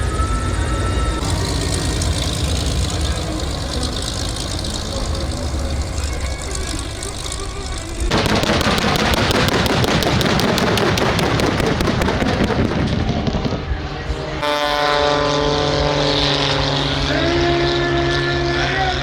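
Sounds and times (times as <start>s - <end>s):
aircraft engine drone: 0.0s - 11.4s
dense rushing noise: 1.1s - 13.2s.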